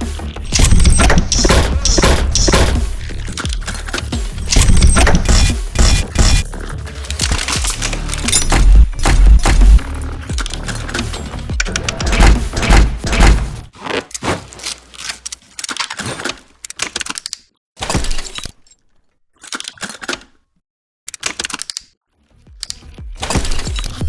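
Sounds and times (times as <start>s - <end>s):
heavy bassy impacts: 0.0s - 6.5s, 7.2s - 13.7s.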